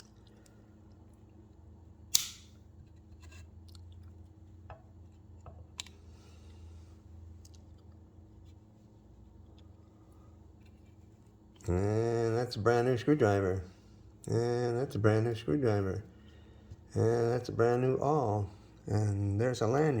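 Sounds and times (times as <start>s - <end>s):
multi-tool snapping open: 2.1s - 2.6s.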